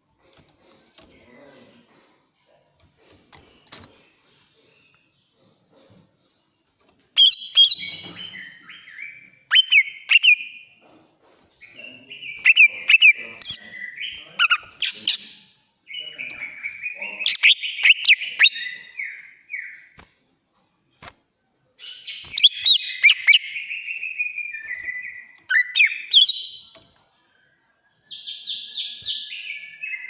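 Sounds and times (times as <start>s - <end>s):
bird singing shrill rapid phrases: 7.2s - 10.6s, 11.6s - 20.0s, 21.9s - 26.9s.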